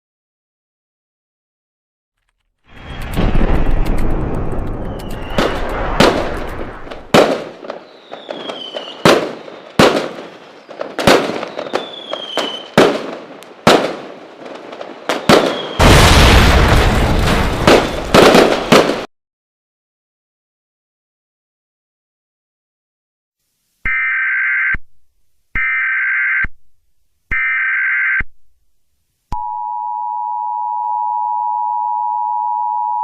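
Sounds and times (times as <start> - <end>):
falling firework whistles: 2.7 - 3.8, 4.7 - 12.8, 15.1 - 16.1
crackling firework bangs: 2.7 - 19.1
fireworks booming and banging: 2.7 - 19.1.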